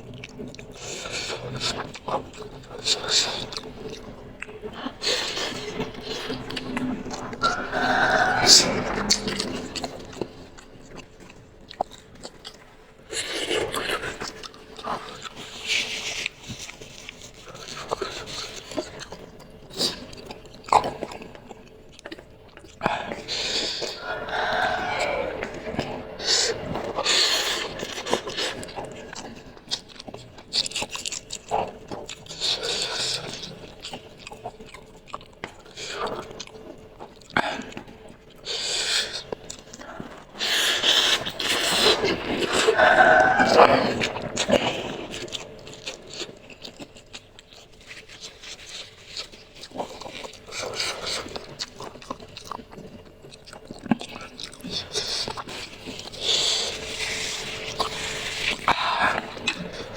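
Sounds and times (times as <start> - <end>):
chewing and slurping noodles: 0.0 - 59.9
mouth clicks: 2.9 - 10.6, 22.8 - 29.0, 38.6 - 46.4
breathy hisses of air: 5.0 - 10.2, 23.1 - 27.8.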